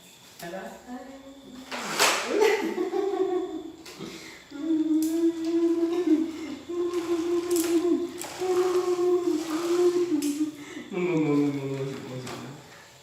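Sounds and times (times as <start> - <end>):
person humming long notes: 4.5 - 11.8.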